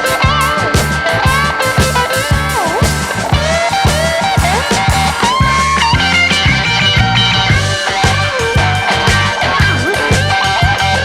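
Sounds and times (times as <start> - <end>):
gliding lead guitar: 0.0 - 11.0
rock music: 0.0 - 11.0.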